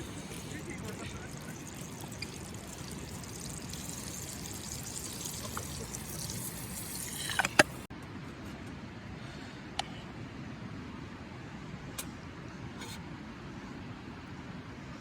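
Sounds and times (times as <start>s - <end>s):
water running: 0.0s - 7.9s.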